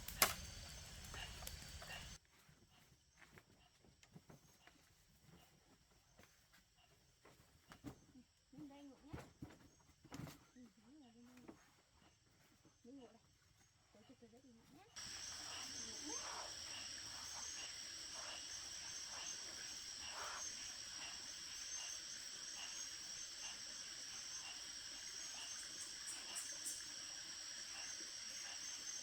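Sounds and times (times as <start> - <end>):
insect chirps: 0.0 - 2.2, 15.0 - 29.0
insects buzzing shrilly: 0.0 - 2.2, 15.0 - 29.0.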